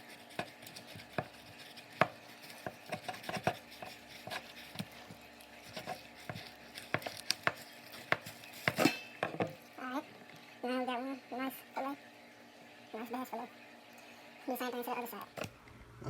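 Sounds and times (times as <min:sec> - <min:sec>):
knife scraping fish skin: 0:00.0 - 0:09.1
knife tapping and knocking on board: 0:05.8 - 0:09.5.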